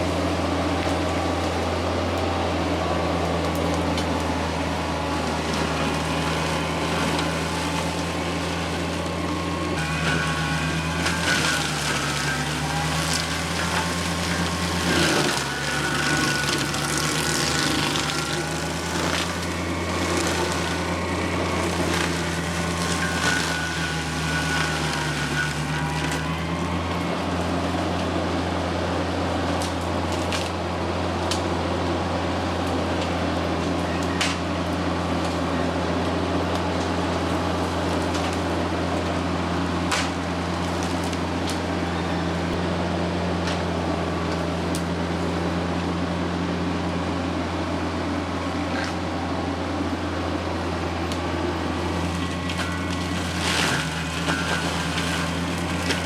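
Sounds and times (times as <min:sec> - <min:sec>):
tractor diesel engine running: 0:00.0 - 0:56.0
mulcher chewing through brush: 0:00.1 - 0:28.4, 0:51.0 - 0:56.0.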